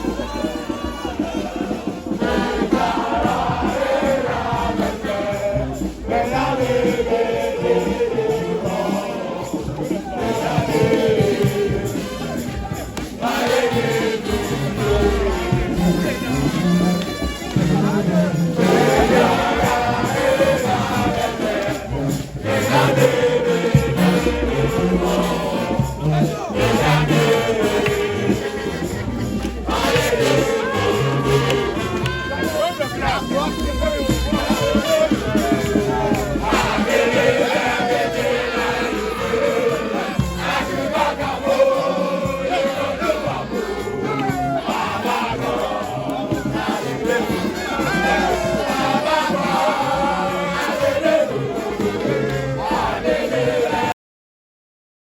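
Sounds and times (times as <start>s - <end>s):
steady percussion beat: 0.0s - 53.9s
voices singing together: 0.0s - 54.0s
stepping bass line: 10.4s - 39.7s.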